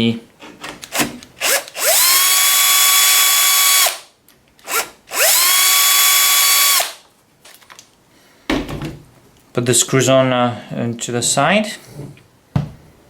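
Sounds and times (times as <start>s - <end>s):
electric drill whining: 1.4s - 7.0s.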